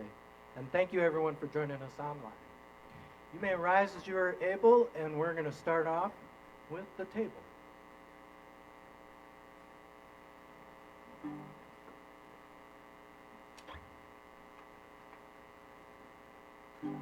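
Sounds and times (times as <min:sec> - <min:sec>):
electrical mains hum: 0:00.0 - 0:17.0
plucked note: 0:11.2 - 0:11.7
sharp click: 0:13.6 - 0:13.9.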